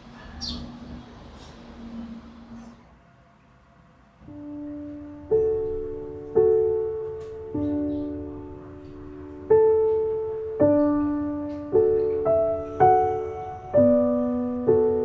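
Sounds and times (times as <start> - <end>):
soft piano music: 4.2 - 15.0.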